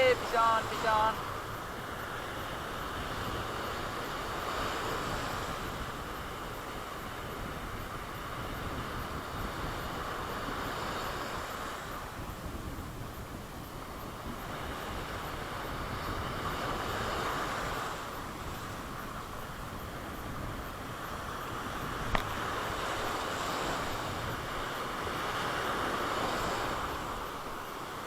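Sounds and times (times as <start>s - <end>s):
sea waves washing on beach: 0.0s - 28.0s
wind rumbling on microphone: 0.0s - 28.0s
sharp click: 22.1s - 22.3s.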